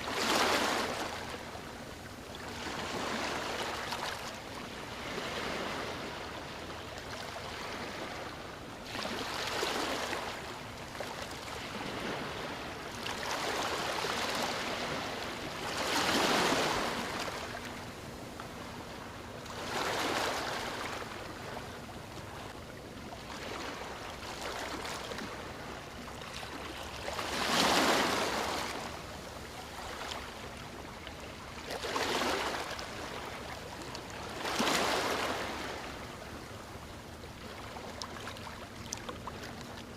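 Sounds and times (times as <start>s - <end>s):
sea waves breaking on beach: 0.0s - 1.5s, 5.0s - 6.4s, 8.8s - 10.5s, 11.1s - 17.7s, 19.5s - 21.2s, 26.4s - 29.1s, 31.7s - 33.5s, 34.2s - 36.0s.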